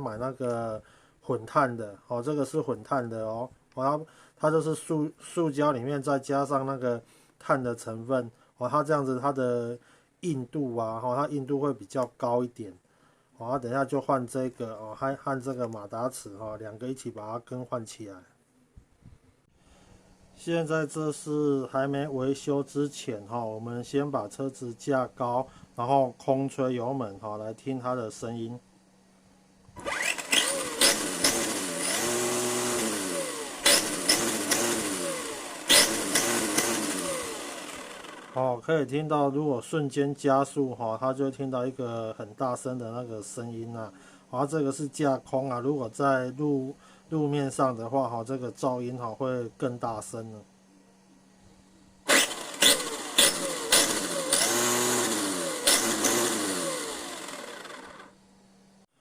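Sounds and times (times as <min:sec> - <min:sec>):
electric motor whine: 0:29.8 - 0:38.4, 0:52.1 - 0:58.2.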